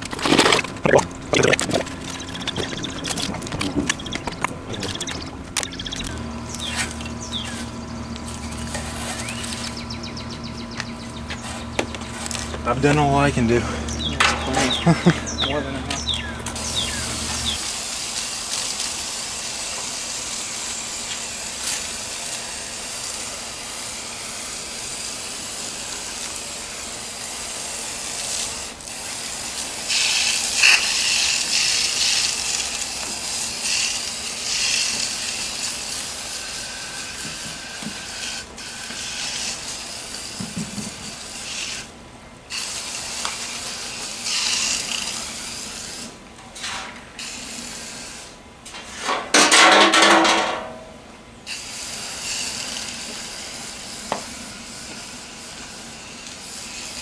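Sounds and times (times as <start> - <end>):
water spraying hiss: 16.6 - 41.9, 42.5 - 48.4, 51.5 - 57.0.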